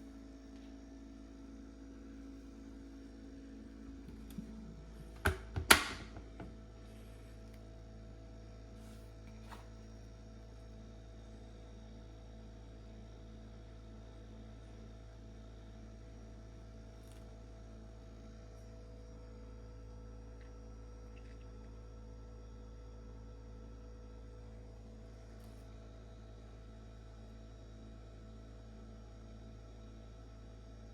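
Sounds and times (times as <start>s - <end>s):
fridge compressor humming: 0.0s - 12.8s.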